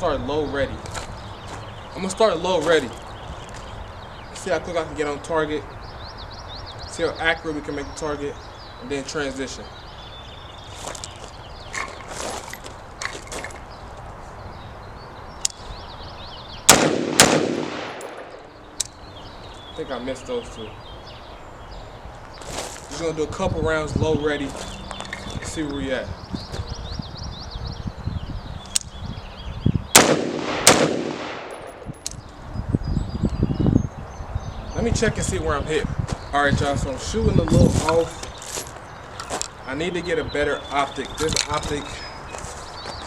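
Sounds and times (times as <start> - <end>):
rifle shots with ringing tail: 16.7 - 18.5, 30.0 - 32.0.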